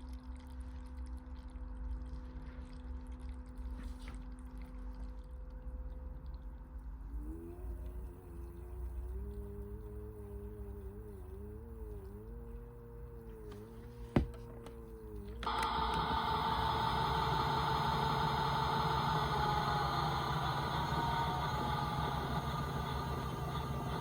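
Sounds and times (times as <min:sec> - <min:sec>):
toy washing machine whirr: 0:07.2 - 0:24.0.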